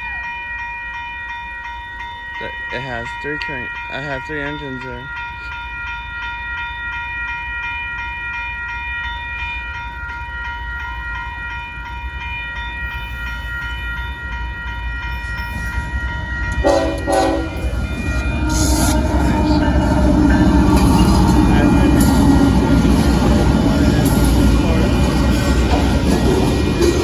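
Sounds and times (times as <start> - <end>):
freight train rumble: 0.0 - 27.0
steady high tone: 0.0 - 27.0
train horn blast: 16.6 - 24.1.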